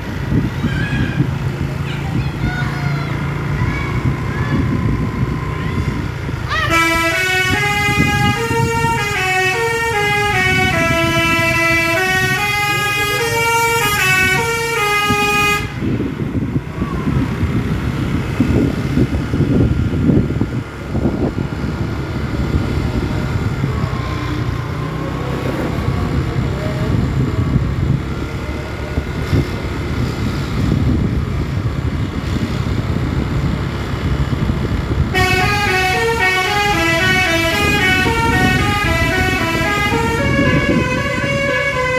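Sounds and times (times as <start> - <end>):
vehicle engine and road noise: 0.0 - 41.9
multi-tone bus horn melody: 6.5 - 16.1, 35.1 - 41.9.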